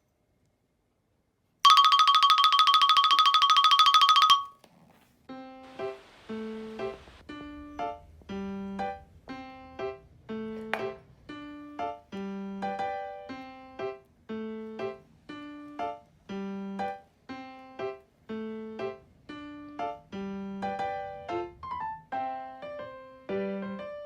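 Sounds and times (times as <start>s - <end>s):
light piano melody: 5.3s - 24.0s.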